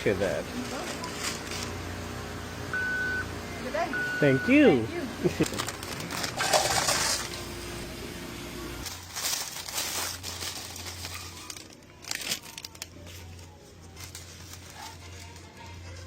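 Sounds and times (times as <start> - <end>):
rustling and crinkling: 0.5 - 1.8, 5.4 - 7.3, 8.8 - 16.0.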